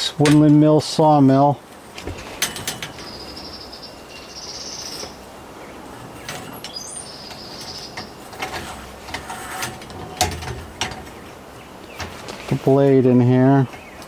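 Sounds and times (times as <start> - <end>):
bird trilling song: 2.8 - 8.4, 11.1 - 14.0.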